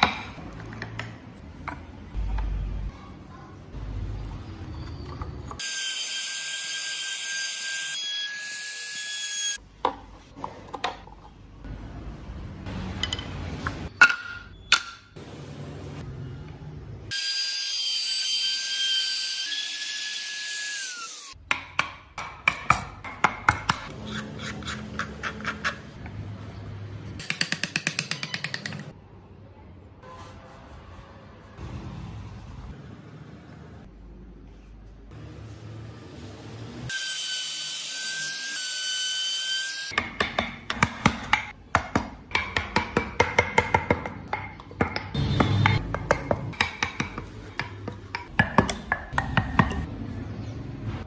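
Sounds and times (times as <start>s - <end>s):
hand tools tapping on wood: 40.0s - 49.8s.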